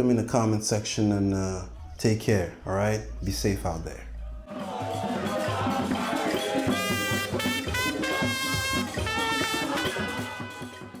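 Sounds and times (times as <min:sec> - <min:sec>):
upbeat music with drum beat: 0:04.4 - 0:11.0.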